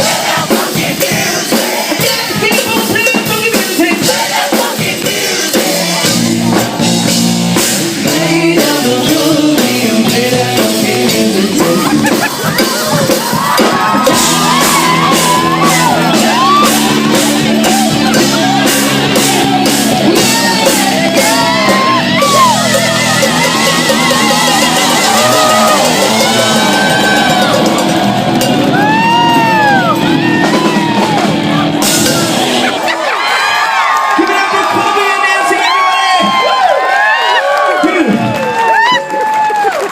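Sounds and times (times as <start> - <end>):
sharp percussion hits: 0.0 - 32.9
live rock band playing: 0.0 - 33.3
person singing: 7.8 - 13.7, 14.3 - 32.7.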